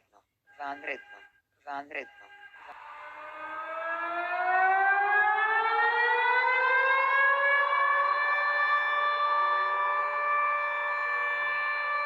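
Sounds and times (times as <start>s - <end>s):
warning siren wailing: 2.4s - 12.0s.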